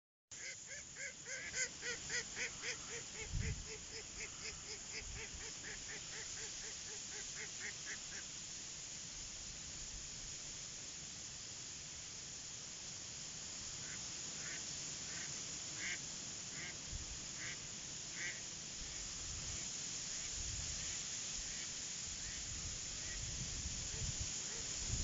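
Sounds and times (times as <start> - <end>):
steady hiss: 0.3 - 25.0
duck quacking: 0.4 - 8.2, 13.8 - 16.0, 17.4 - 17.6.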